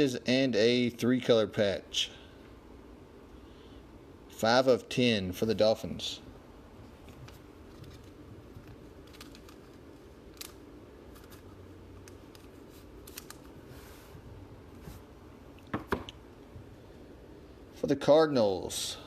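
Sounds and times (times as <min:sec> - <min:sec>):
low room hum: 0:00.0 - 0:19.0
cards and wrappers rustling: 0:07.0 - 0:14.0.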